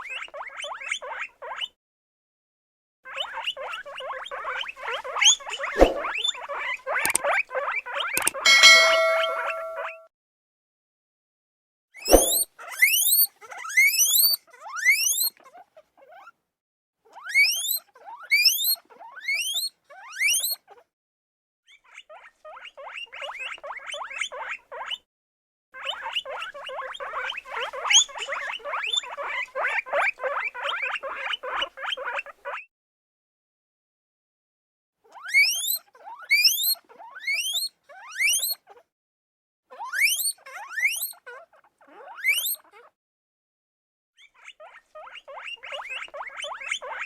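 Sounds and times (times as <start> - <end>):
small animal squealing: 12.1 - 16.3, 17.1 - 20.8, 21.7 - 25.0, 25.8 - 32.7, 35.1 - 38.8, 39.7 - 43.0, 44.2 - 47.0.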